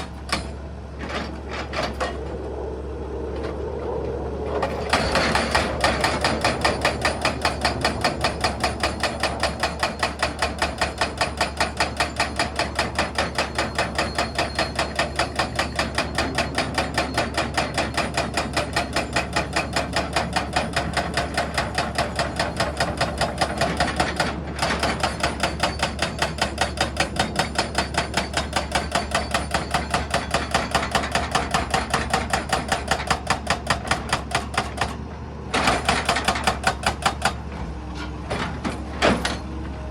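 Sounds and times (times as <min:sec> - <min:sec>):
machine engine hum: 0:00.0 - 0:11.3
hydraulic breaker hammering rock: 0:04.9 - 0:37.5.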